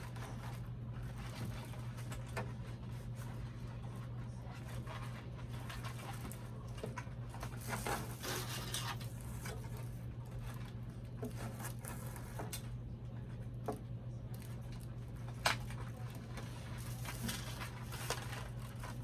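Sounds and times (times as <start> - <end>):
crinkly plastic rustling: 0.0 - 12.8, 14.3 - 19.0
steady low hum: 0.0 - 19.0.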